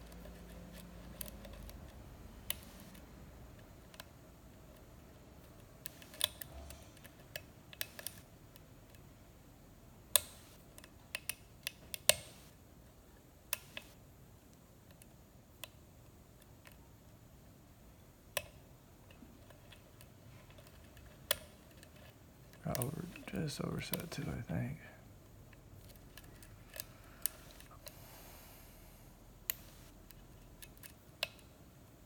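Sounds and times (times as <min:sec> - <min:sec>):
lock pick clicking in a lock: 0:05.8 - 0:09.0.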